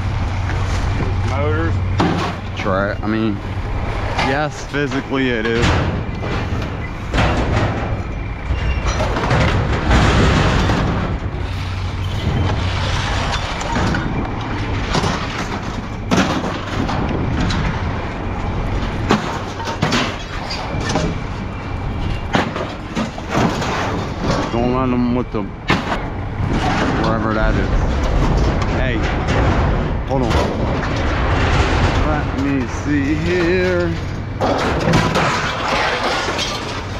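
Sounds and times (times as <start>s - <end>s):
scrap metal clanking and thudding: 0.0s - 36.9s
steady low rumble: 0.0s - 36.9s.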